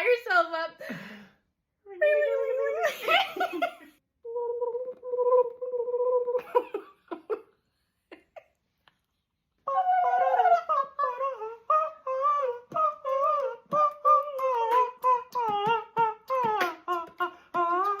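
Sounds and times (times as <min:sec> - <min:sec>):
high voice singing wordless tune: 0:01.9 - 0:03.1, 0:04.2 - 0:06.8, 0:09.6 - 0:18.0.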